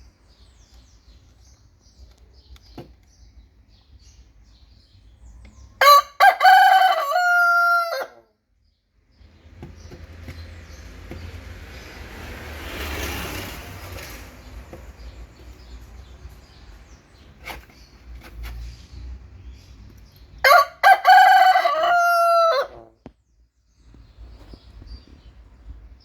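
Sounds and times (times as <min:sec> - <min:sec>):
rooster crowing: 0:05.8 - 0:08.3, 0:20.4 - 0:22.9.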